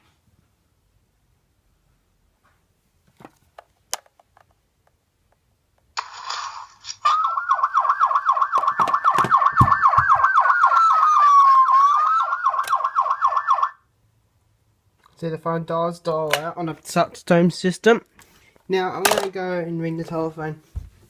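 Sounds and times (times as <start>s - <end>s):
warbling phone ringtone: 7.0s - 13.8s.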